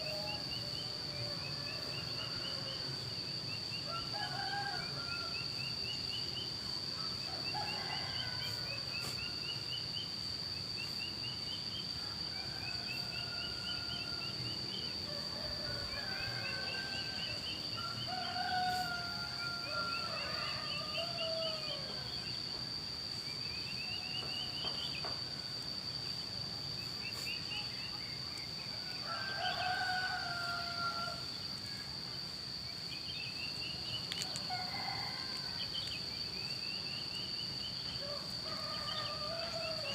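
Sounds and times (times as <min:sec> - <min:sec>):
steady high-pitched whine: 0:00.0 - 0:39.9
roosters crowing: 0:03.9 - 0:05.6, 0:07.3 - 0:09.2, 0:15.0 - 0:22.2, 0:28.7 - 0:31.4, 0:34.2 - 0:35.7, 0:38.0 - 0:39.9.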